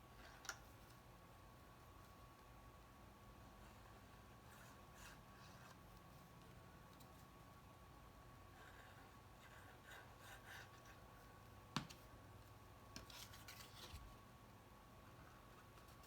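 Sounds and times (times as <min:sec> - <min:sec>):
cardstock rustling and rubbing: 0:13.0 - 0:14.2.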